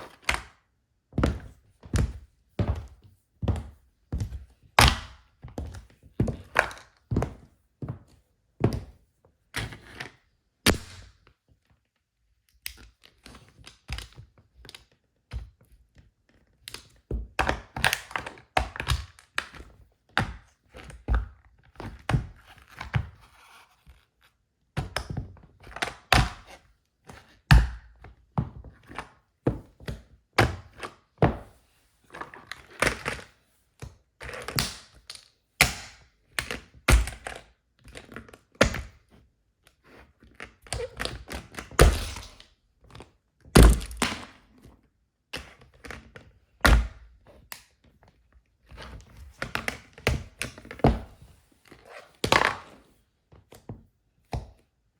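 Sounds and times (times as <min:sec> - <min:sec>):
heels stamping on plastic toy: 0:41.7 - 0:42.4, 0:43.6 - 0:44.3.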